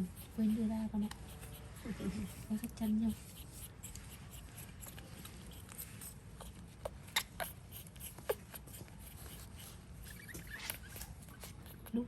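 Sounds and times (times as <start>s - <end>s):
faint rustling: 0.0s - 12.0s.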